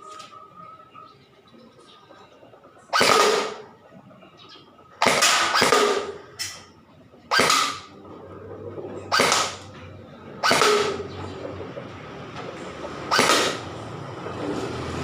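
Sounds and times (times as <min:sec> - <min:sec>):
airsoft gun firing cracks: 0:02.9 - 0:03.7, 0:05.0 - 0:06.6, 0:07.3 - 0:07.9, 0:09.1 - 0:09.7, 0:10.4 - 0:11.1, 0:13.1 - 0:13.8.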